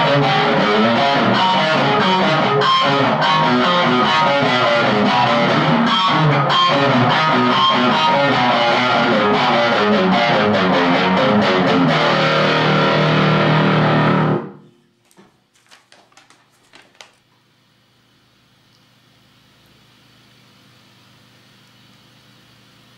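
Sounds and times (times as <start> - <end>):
distorted electric guitar riff: 0.0 - 14.7.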